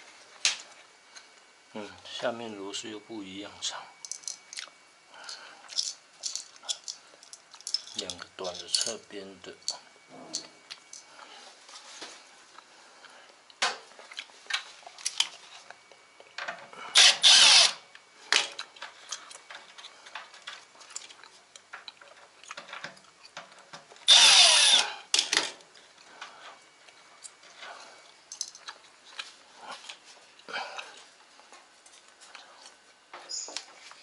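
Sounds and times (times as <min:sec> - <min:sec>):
clicks of screws being handled: 0:04.0 - 0:04.4, 0:05.7 - 0:09.0
power driver spinning screws: 0:17.0 - 0:17.8, 0:24.1 - 0:25.0.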